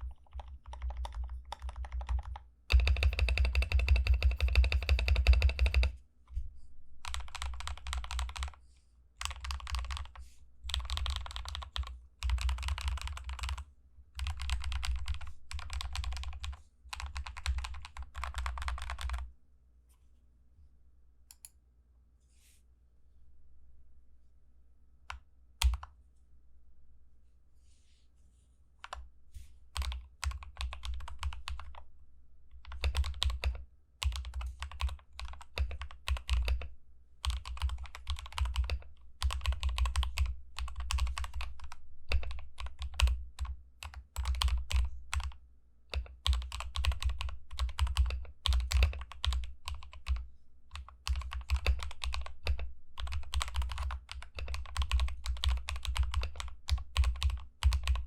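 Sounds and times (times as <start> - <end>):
mechanical keyboard typing: 0.0 - 6.0, 7.0 - 8.6, 9.2 - 13.6, 14.2 - 19.3, 25.1 - 25.9, 28.8 - 29.0, 29.8 - 31.9, 32.5 - 58.0.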